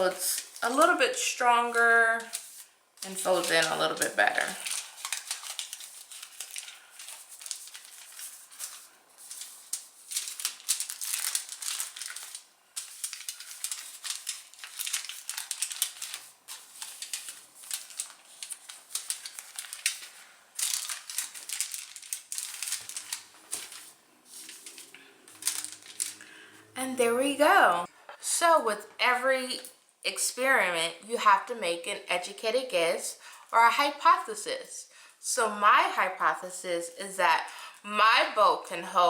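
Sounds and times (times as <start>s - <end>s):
aluminium foil crinkling: 0.0s - 26.4s.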